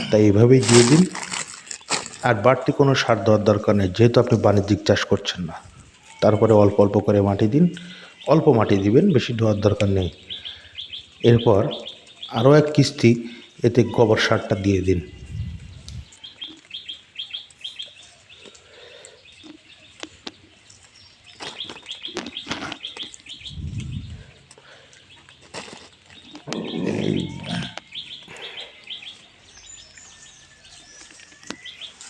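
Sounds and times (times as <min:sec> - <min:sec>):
rustles: 0:00.0 - 0:03.2, 0:15.2 - 0:32.0
small birds chirping: 0:00.0 - 0:32.0.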